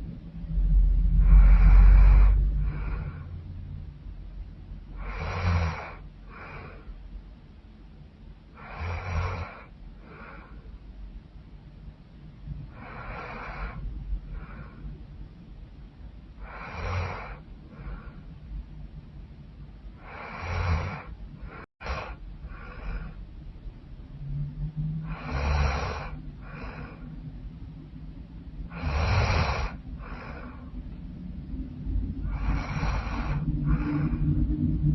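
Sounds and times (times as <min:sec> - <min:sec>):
soft breath: 0:00.5 - 0:07.3, 0:08.4 - 0:11.4, 0:12.4 - 0:23.6, 0:24.9 - 0:34.9
woman snoring loudly: 0:01.3 - 0:03.3, 0:05.0 - 0:06.8, 0:08.6 - 0:09.7, 0:16.4 - 0:17.4, 0:20.0 - 0:23.2, 0:25.0 - 0:27.0, 0:28.7 - 0:30.6, 0:32.3 - 0:34.2.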